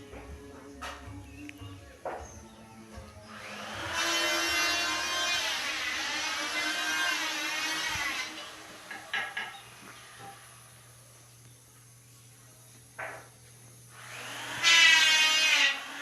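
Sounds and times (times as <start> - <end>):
electric power tool whining: 3.3 - 8.9, 14.0 - 16.0.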